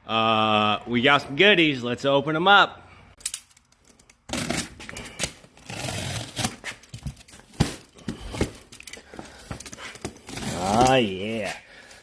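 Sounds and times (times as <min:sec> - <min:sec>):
cardboard rustling and tearing: 0:10.0 - 0:11.5.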